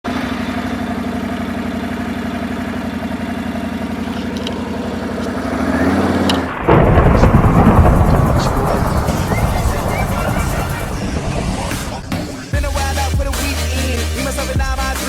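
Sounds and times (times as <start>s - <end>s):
atv engine idling: 0.0s - 15.0s
sudden rough loud sound: 5.4s - 13.5s.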